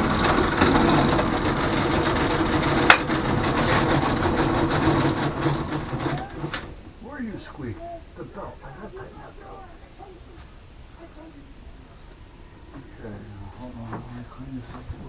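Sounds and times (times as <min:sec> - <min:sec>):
drill press running: 0:00.0 - 0:08.8
drive belt squeaking: 0:00.0 - 0:10.8.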